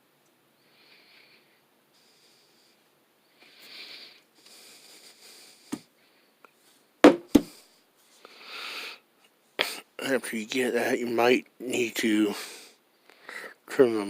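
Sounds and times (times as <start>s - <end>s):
man breathing through nose: 0.6s - 6.4s, 7.4s - 9.9s, 12.4s - 13.6s.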